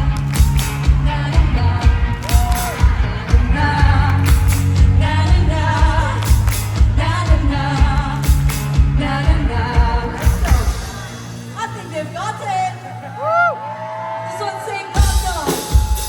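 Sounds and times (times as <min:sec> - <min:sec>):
drum beat: 0:00.0 - 0:11.5, 0:15.0 - 0:16.0
live rock band playing: 0:00.0 - 0:11.7, 0:15.0 - 0:16.0
crowd singing along: 0:00.8 - 0:13.8.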